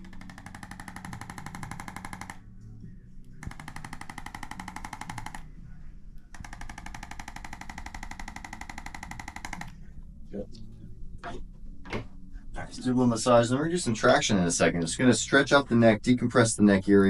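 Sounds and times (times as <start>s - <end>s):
rapid clicking of activator tool: 0.0s - 2.4s, 3.4s - 5.4s, 6.4s - 9.7s.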